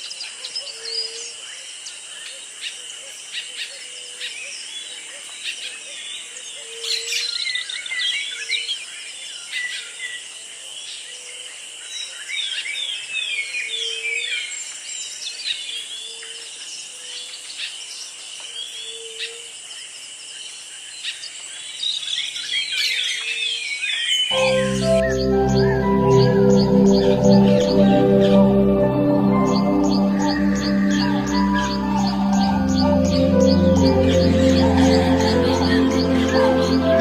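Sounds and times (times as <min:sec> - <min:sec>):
birds chirping: 0:24.2 - 0:37.0
short low repeating note: 0:24.3 - 0:37.0.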